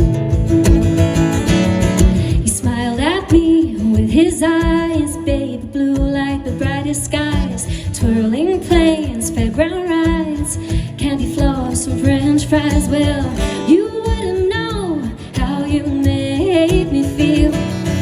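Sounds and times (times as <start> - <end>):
strummed acoustic guitar: 0.0 - 18.0
woman singing: 2.2 - 18.0.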